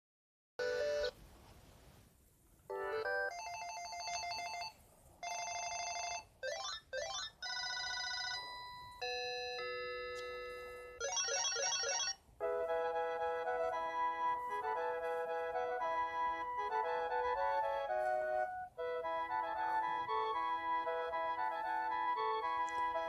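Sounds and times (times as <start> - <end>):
cordless phone ringtones: 0.6 - 1.2, 2.8 - 12.6.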